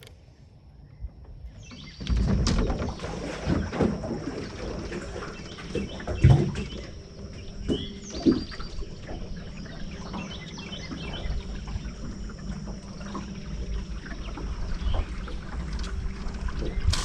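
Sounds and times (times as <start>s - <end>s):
steady low hum: 0.0s - 17.0s
birds chirping: 5.1s - 17.0s.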